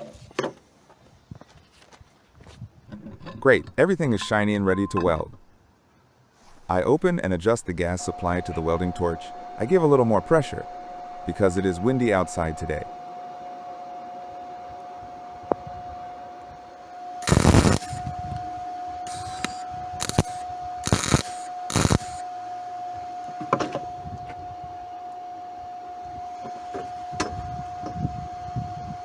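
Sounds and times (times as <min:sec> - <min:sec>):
welder arc crackling: 0:06.4 - 0:23.4
steady tone: 0:06.4 - 0:26.4.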